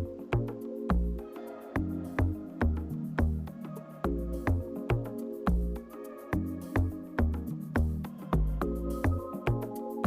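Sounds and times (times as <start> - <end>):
electronic music with bass kick: 0.0 - 10.0.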